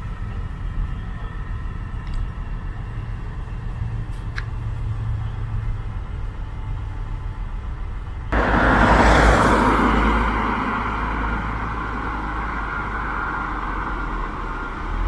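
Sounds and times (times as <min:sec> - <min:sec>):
train rumbling: 0:00.0 - 0:15.0
loud rushing noise: 0:08.3 - 0:14.6.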